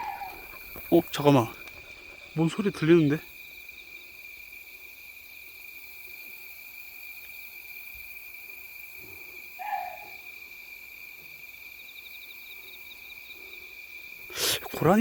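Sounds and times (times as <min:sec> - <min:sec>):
night insects chirring: 0:00.0 - 0:15.0.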